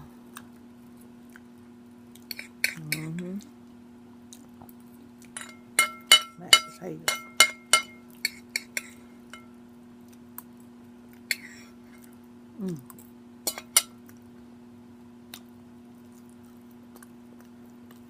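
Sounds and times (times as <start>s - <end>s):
steady low hum: 0.0s - 18.0s
cutlery clicking on plate: 5.4s - 9.5s, 13.5s - 14.0s.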